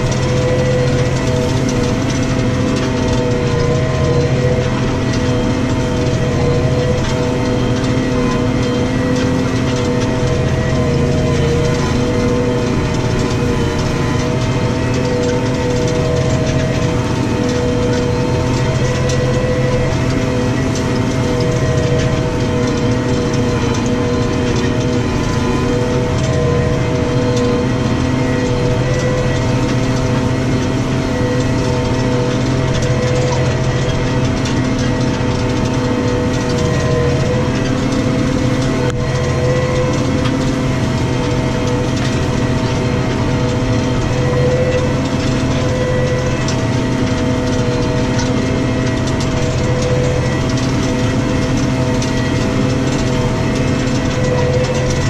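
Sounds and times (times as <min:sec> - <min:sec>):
steady whine: 0:00.0 - 0:55.0
tractor diesel engine under load: 0:00.0 - 0:55.0.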